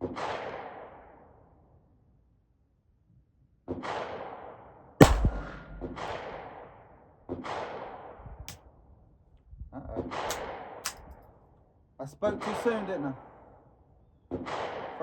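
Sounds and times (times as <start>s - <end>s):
suppressed pistol shot: 5.0s - 6.3s
gunshots with echoes: 5.0s - 6.5s.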